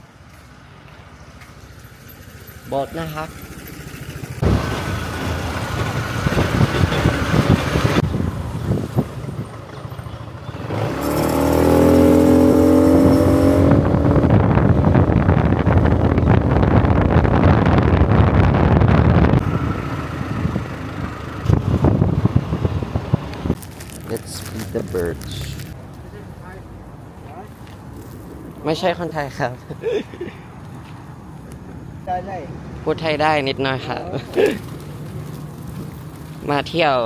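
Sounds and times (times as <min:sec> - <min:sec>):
road noise: 0:00.0 - 0:37.0
vehicle engine running: 0:01.5 - 0:23.8.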